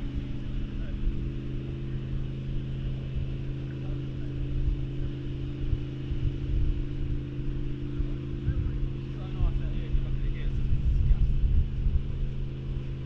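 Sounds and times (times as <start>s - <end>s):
engine humming: 0.0s - 13.0s
low rumble: 0.0s - 13.0s.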